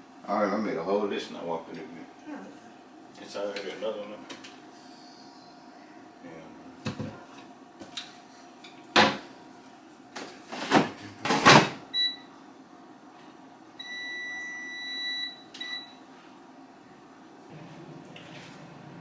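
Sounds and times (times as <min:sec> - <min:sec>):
air fryer clunks: 0:08.9 - 0:09.3, 0:10.7 - 0:11.9.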